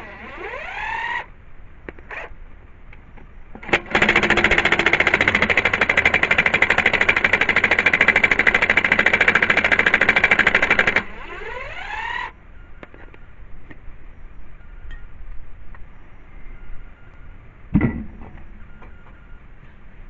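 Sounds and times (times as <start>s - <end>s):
wrench motor running free: 3.6s - 12.3s
sharp thump: 17.7s - 18.5s.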